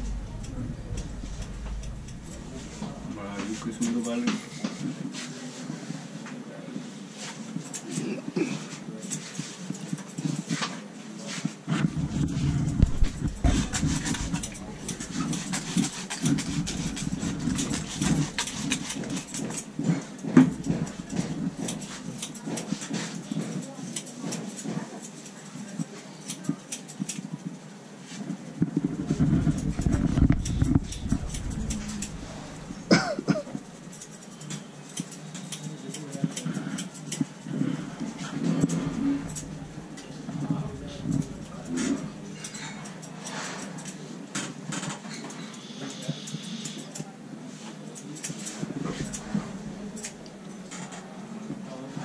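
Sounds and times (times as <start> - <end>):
low background murmur: 0.0 - 52.0.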